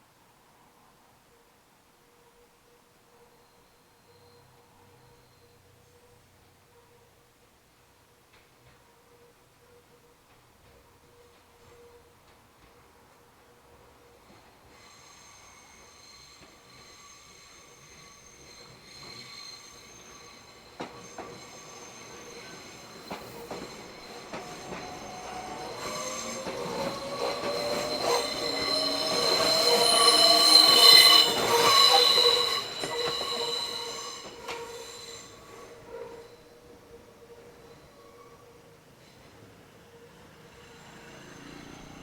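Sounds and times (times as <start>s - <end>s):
train wheels squealing: 3.1s - 6.3s, 13.8s - 42.0s.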